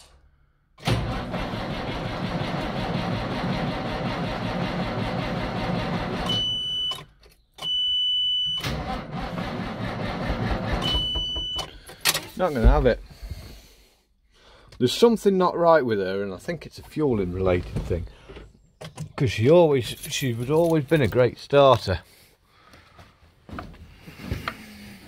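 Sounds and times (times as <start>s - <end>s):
tractor engine cranking: 0.8s - 7.0s, 8.6s - 12.8s
high warning beep: 6.3s - 7.0s, 10.8s - 11.7s.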